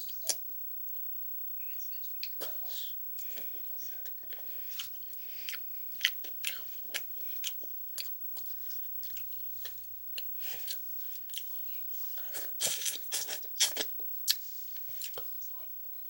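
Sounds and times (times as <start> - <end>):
person chewing crunchy food: 3.2 - 15.3.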